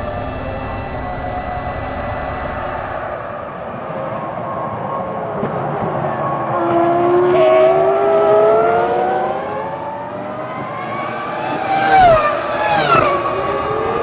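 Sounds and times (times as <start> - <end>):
racing car engine accelerating: 0.0 - 4.2, 5.6 - 14.0.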